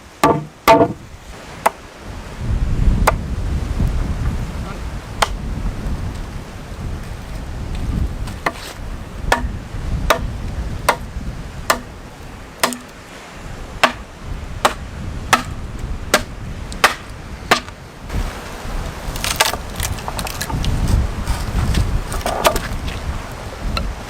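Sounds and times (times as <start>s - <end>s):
chopping strikes: 0.2s - 1.0s, 3.0s - 3.2s, 5.2s - 5.4s, 9.3s - 10.3s, 11.7s - 11.9s, 12.6s - 12.9s, 13.8s - 17.8s.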